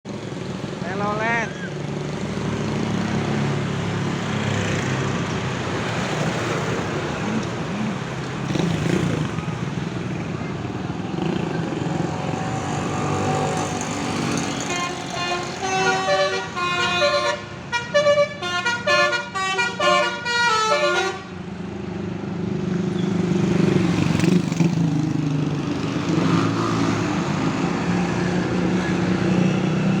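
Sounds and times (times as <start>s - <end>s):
bus engine and traffic rumble: 0.0s - 30.0s
multi-tone musical bus horn: 14.4s - 21.4s.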